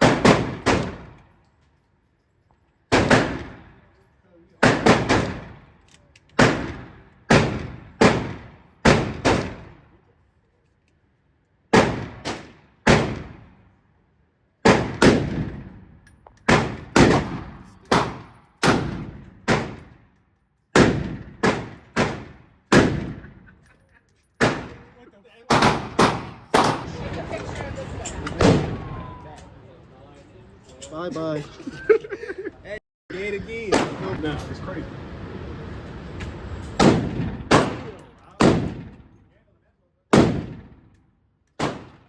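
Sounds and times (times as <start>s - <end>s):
gunshots with ringing echo: 0.0s - 1.1s, 2.9s - 3.8s, 4.6s - 5.7s, 14.6s - 15.8s, 16.5s - 20.0s, 20.8s - 23.4s, 24.4s - 24.9s, 25.5s - 26.9s, 36.8s - 39.0s, 40.1s - 40.9s, 41.6s - 42.0s.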